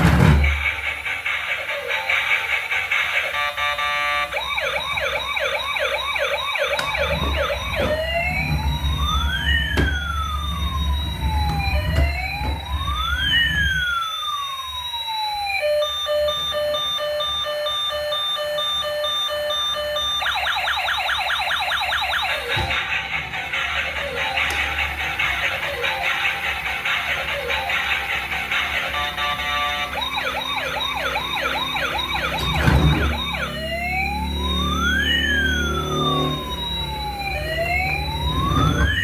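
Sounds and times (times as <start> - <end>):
electronic siren: 0.0 - 39.0.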